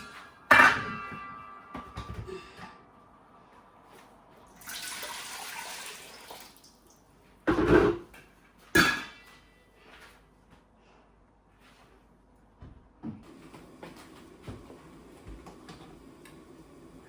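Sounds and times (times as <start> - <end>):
water pouring: 4.5 - 7.0.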